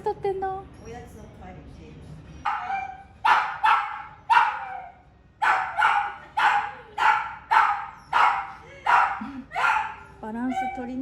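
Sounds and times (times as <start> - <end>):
dog barking: 2.5 - 11.0.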